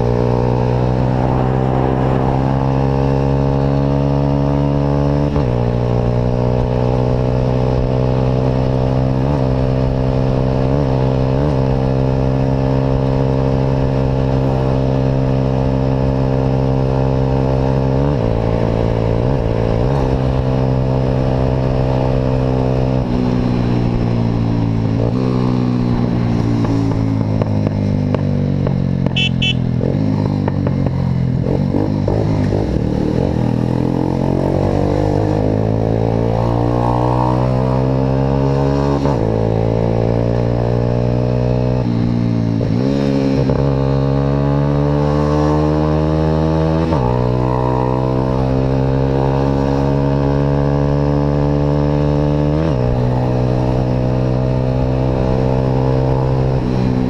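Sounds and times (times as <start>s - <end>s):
vehicle engine through exhaust: 17.4s - 57.0s.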